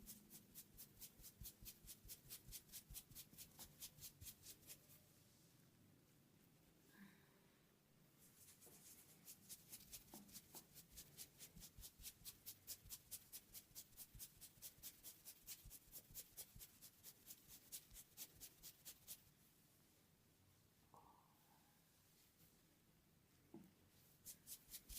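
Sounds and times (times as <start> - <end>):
hands rubbing through hair: 8.2 - 19.2, 24.2 - 24.9.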